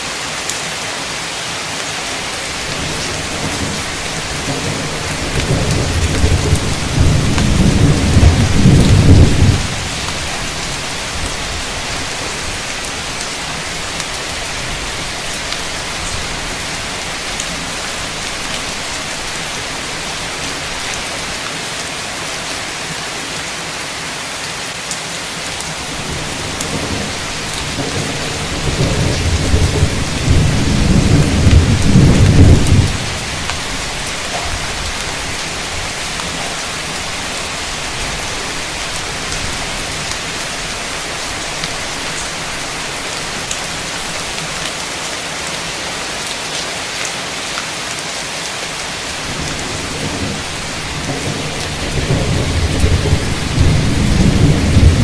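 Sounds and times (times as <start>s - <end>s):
heavy rain: 0.0s - 55.0s
thunder rolling: 2.5s - 12.6s, 25.9s - 37.4s, 49.2s - 55.0s.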